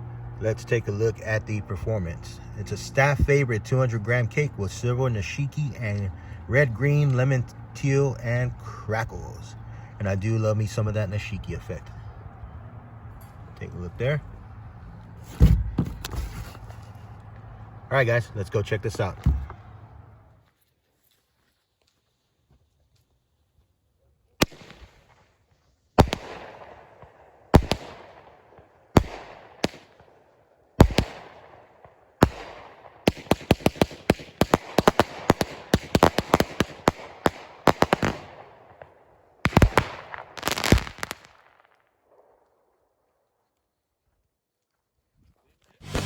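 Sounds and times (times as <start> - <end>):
firework shots crackling: 24.4 - 41.8.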